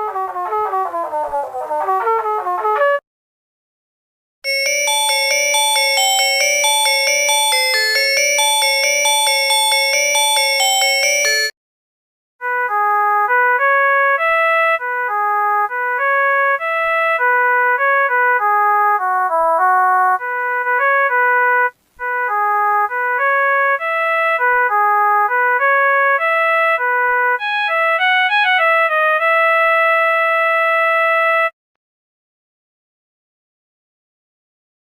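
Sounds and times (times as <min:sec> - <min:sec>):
synthesized phone ringtone melody: 0:04.5 - 0:11.6, 0:27.4 - 0:28.7.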